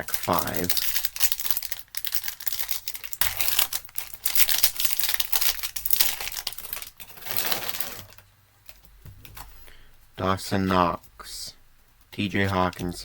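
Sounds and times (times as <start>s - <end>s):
card pack wrapper tearing: 0.0s - 8.2s.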